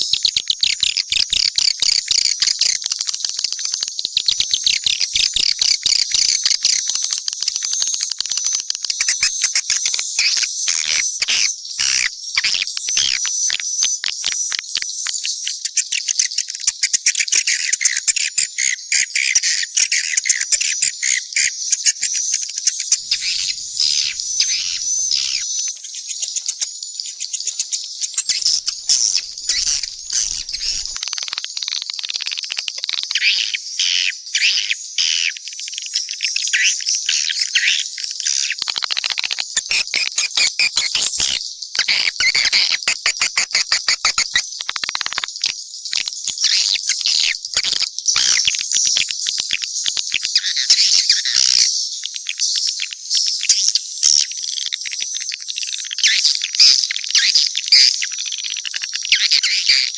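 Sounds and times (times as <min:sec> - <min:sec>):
swiftlets twittering: 0:22.9 - 0:31.0.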